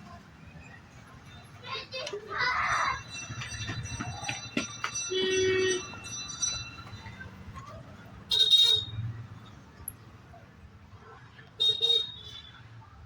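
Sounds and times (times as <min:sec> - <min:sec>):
street traffic: 0:00.0 - 0:13.0
vehicle horns honking: 0:05.1 - 0:06.0, 0:08.3 - 0:09.1, 0:11.6 - 0:12.6.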